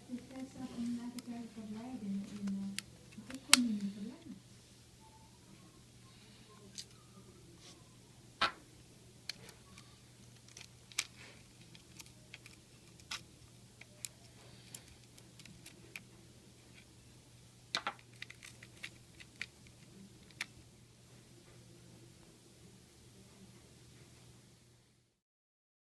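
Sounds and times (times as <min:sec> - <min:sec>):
hands handling plastic parts: 0:09.3 - 0:16.1, 0:17.7 - 0:20.5.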